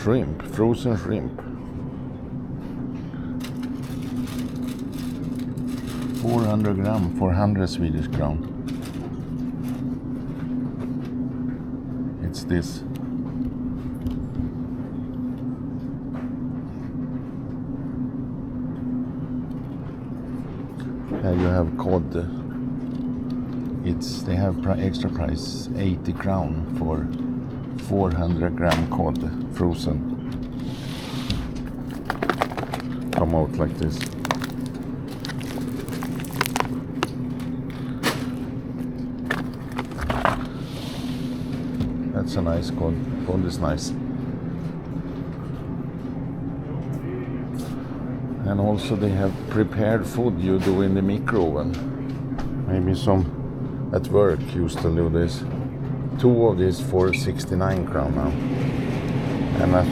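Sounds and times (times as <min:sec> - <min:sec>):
low machinery hum: 0:00.0 - 0:50.7
refrigeration hum: 0:29.3 - 0:45.8
package clicks and rustles: 0:31.7 - 0:37.2, 0:39.2 - 0:40.4.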